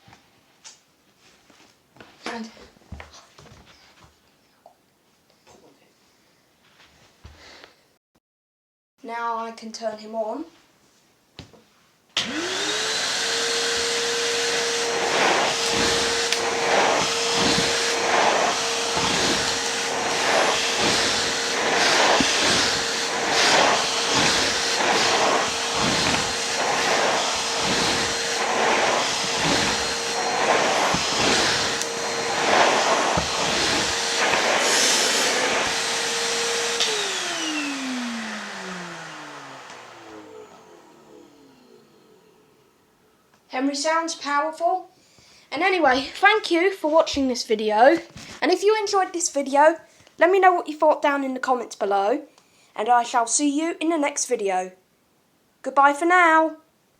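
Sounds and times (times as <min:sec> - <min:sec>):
vacuum cleaner motor whine: 0:12.2 - 0:43.4.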